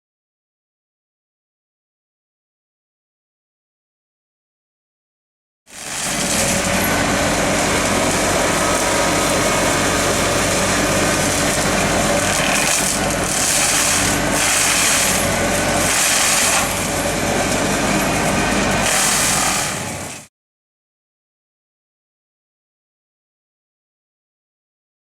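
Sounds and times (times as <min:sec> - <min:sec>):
engine running: 0:05.7 - 0:20.3
flail mower hissing: 0:05.7 - 0:20.3.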